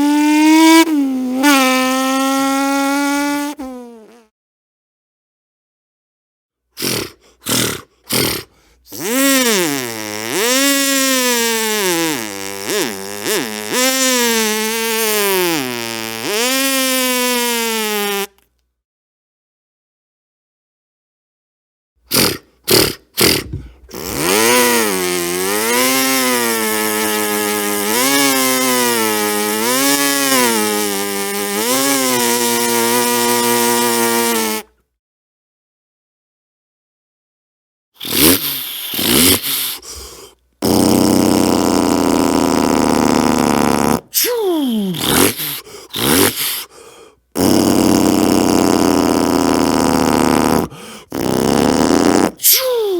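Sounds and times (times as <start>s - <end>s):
person imitating an engine: 0.0s - 4.0s, 6.8s - 18.3s, 22.1s - 34.7s, 38.0s - 52.9s
man's breathy bursts: 6.8s - 8.9s, 38.0s - 41.2s, 44.1s - 47.9s, 50.4s - 51.4s, 52.3s - 52.9s
man's throaty growl: 38.0s - 52.9s.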